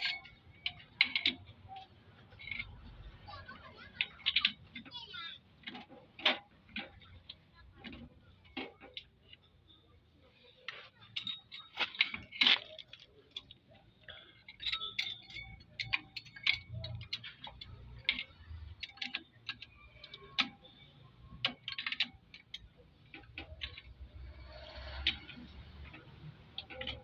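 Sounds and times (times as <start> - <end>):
metal tools clinking: 0.0 - 4.9, 10.5 - 27.0.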